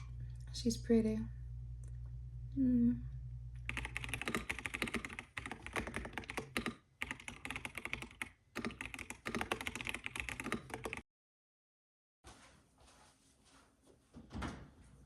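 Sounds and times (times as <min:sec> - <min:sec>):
fast typing on keyboard: 0:03.7 - 0:11.0.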